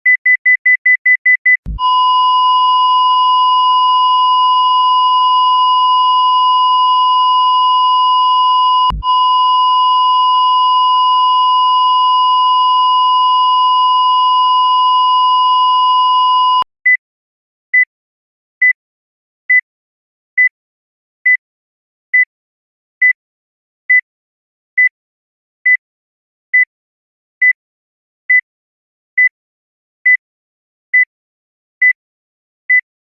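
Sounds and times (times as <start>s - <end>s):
heartbeat monitor beeps: 0.1s - 17.0s
flatline alarm beep: 1.6s - 16.6s
defibrillator thump: 8.9s - 9.1s.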